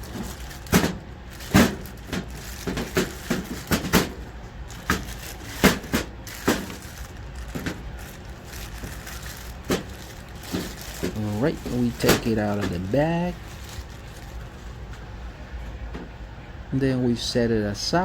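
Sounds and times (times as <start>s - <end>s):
packaging rustling: 0.0s - 14.9s.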